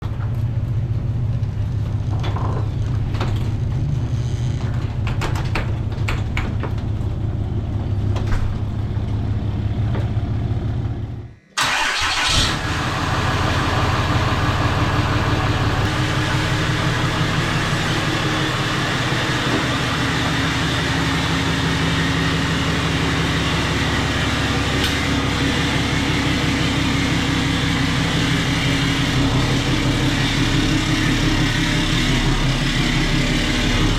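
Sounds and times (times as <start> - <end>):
dirt bike engine running: 13.8 - 33.9.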